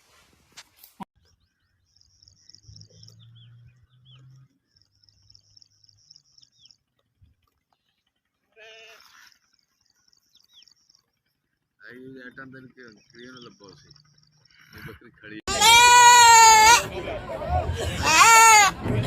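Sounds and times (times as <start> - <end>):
high chirping trills: 1.2 - 7.0, 9.1 - 14.7
goat bleating: 8.4 - 9.5, 15.5 - 16.9, 18.0 - 18.8.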